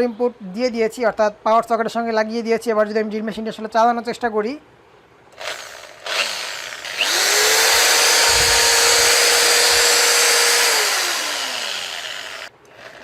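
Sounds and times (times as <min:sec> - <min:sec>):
electric drill whining: 0:05.4 - 0:13.0.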